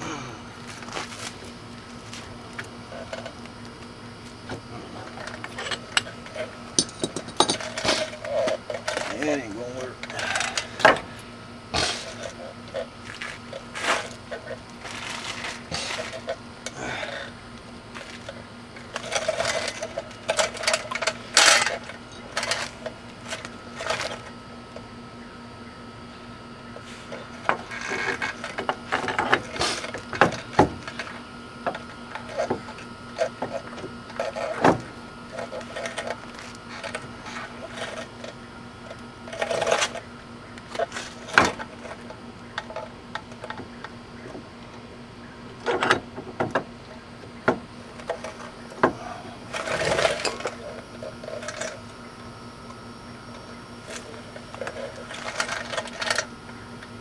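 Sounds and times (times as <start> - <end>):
faint hum: 0.0 - 57.0
metal tools clinking and rattling: 5.0 - 11.0.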